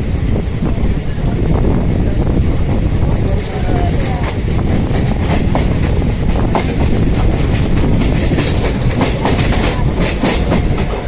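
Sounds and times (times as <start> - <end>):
train rumbling: 0.0 - 11.0
wheels clicking over rail joints: 3.1 - 11.0.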